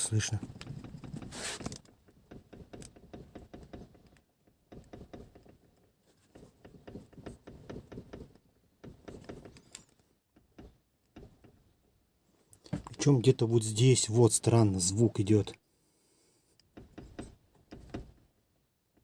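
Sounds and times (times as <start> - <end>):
knocks and clunks from car body: 0.0 - 9.7, 10.3 - 11.9, 12.6 - 13.1, 16.7 - 19.0.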